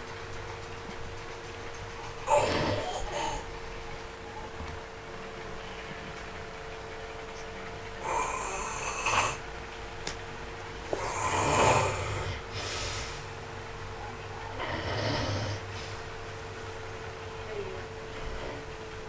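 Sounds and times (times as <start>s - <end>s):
person snoring: 2.0s - 3.5s, 8.0s - 9.4s, 11.0s - 13.1s, 14.6s - 15.6s.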